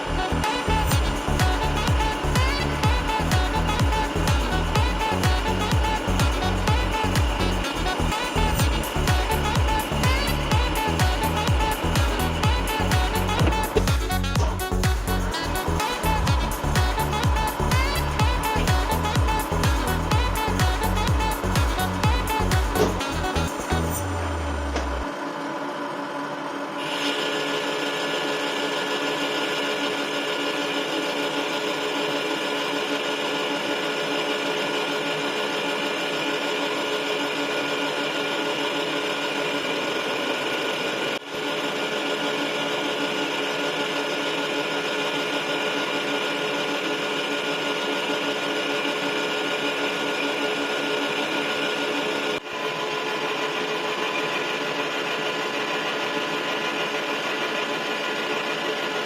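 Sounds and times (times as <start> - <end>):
metal lathe whine and hum: 20.8 - 59.0.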